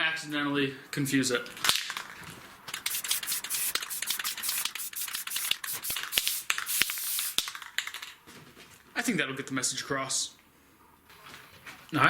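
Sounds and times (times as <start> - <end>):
pen scratching on rough board: 2.9 - 6.2.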